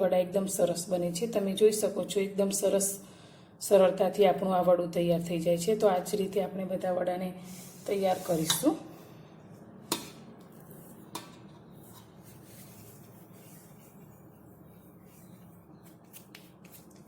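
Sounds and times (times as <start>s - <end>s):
hands patting dough: 15.3s - 17.0s.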